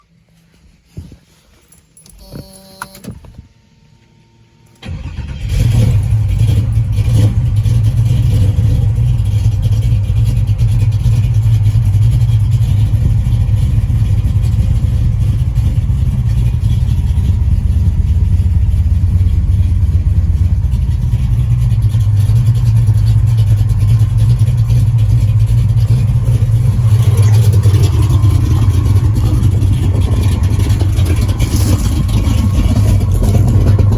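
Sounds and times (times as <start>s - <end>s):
car engine starting and idling: 0.6s - 33.9s.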